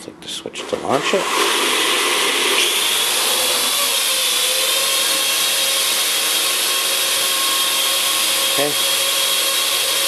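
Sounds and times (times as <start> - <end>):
drone propellers whirring: 1.0 - 8.6.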